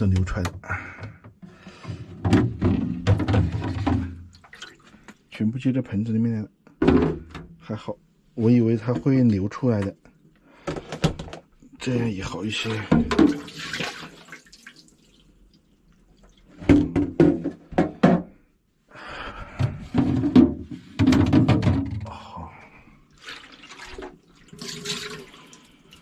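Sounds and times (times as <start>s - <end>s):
water splashing and pouring: 3.5s - 5.1s, 12.6s - 16.6s, 23.1s - 26.0s.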